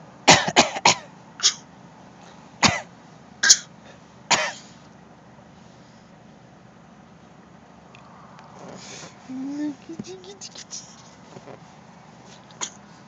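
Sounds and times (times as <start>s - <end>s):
person coughing: 0.3s - 1.6s.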